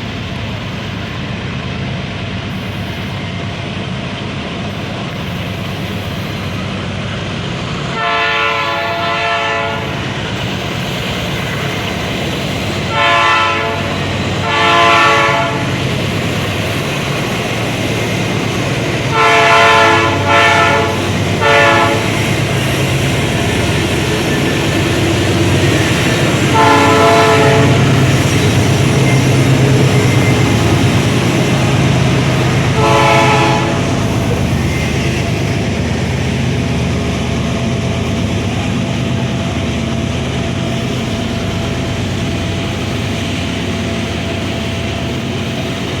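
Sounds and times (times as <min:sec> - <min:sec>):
train rumbling past: 0:00.0 - 0:46.0
locomotive horn blasts: 0:07.9 - 0:10.0, 0:12.9 - 0:15.8, 0:19.0 - 0:22.2, 0:26.4 - 0:28.2, 0:32.3 - 0:35.1.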